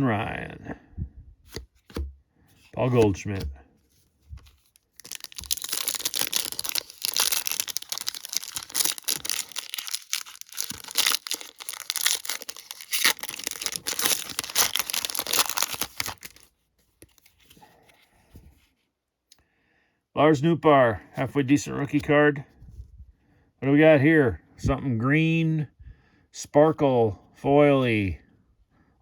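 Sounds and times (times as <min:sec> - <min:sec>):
card pack wrapper crinkling and tearing: 0:04.3 - 0:17.6.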